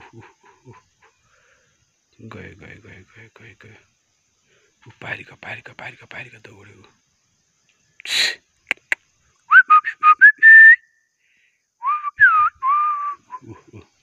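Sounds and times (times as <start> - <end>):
person whistling: 9.5 - 10.8, 11.8 - 13.4.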